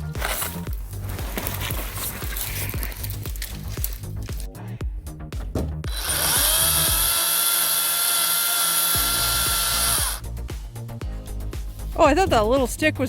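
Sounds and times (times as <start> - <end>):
background music with a beat: 0.0 - 7.2, 8.9 - 13.0
electric chainsaw whine: 5.9 - 10.2.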